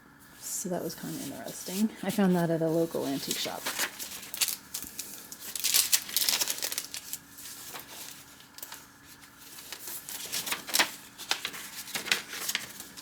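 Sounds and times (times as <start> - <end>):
paper pages rustling and flicking: 1.0 - 13.0.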